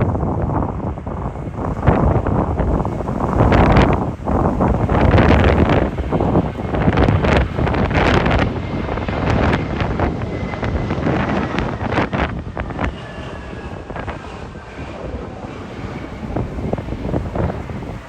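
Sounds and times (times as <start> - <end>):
faint jet engine whine: 0.0 - 18.0
gusty wind buffeting microphone: 0.0 - 18.0.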